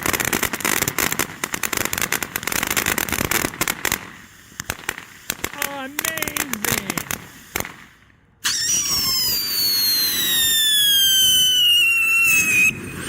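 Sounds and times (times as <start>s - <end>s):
firework whistle: 8.4s - 13.0s.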